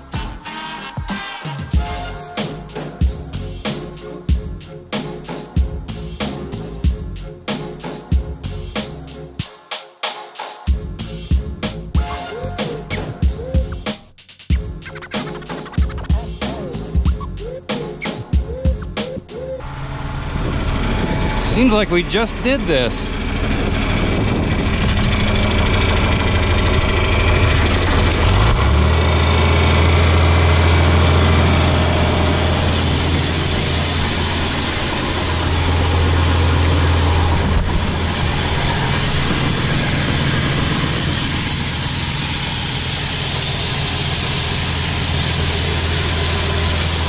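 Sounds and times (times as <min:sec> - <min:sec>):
farm machinery engine running: 0:19.6 - 0:47.0.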